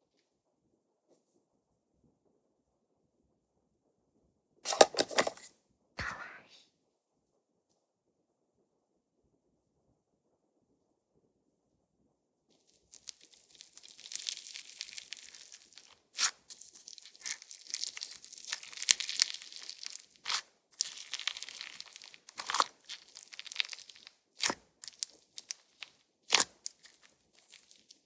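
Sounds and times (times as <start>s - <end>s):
slime crackling and popping: 12.6s - 28.0s.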